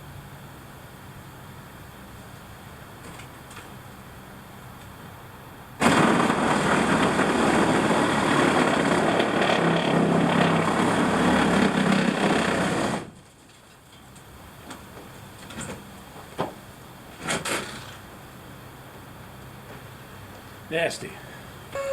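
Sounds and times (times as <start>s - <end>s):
power saw cutting wood: 5.8s - 13.1s.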